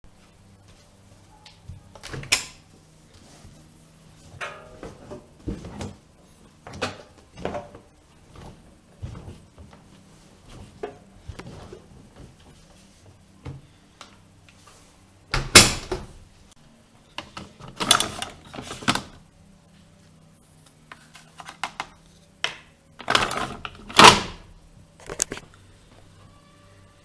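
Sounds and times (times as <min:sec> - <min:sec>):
washing machine clicks and knocks: 0:04.4 - 0:05.8, 0:15.4 - 0:16.2.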